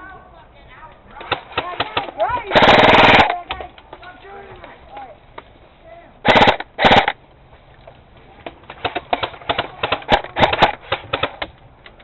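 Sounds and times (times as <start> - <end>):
airsoft guns firing: 1.2 - 3.6, 6.2 - 7.2, 8.7 - 11.5.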